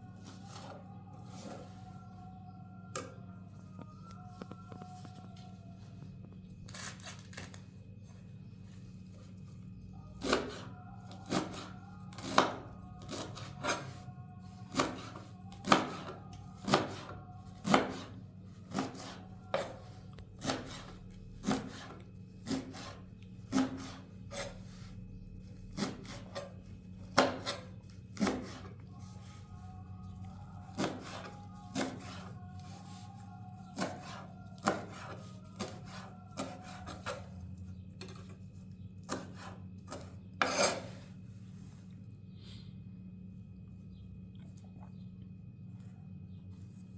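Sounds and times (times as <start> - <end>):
knife chopping leaves: 0.2 - 1.7, 6.7 - 7.7, 10.1 - 37.3, 38.0 - 41.0
knife rasping rubs: 13.0 - 37.4, 39.0 - 41.2.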